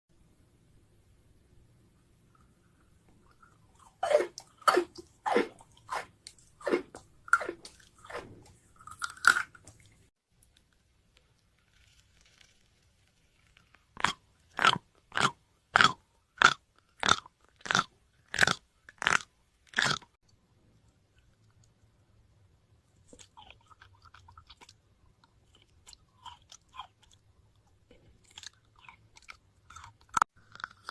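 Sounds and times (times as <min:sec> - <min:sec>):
crunching bites into raw vegetables: 0:03.3 - 0:09.8, 0:13.5 - 0:20.0.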